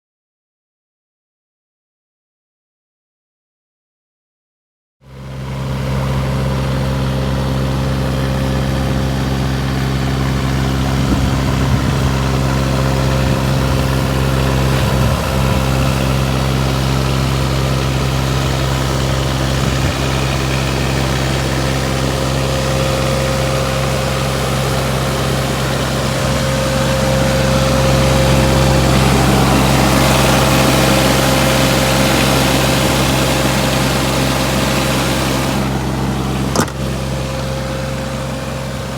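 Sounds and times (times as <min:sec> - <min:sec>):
diesel engine idling: 0:05.2 - 0:38.9
brief knocks: 0:36.5 - 0:36.9.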